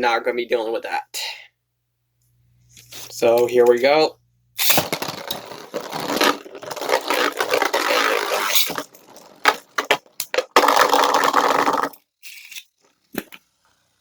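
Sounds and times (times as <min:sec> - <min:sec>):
spinning tops grinding and clashing: 0:04.6 - 0:12.7.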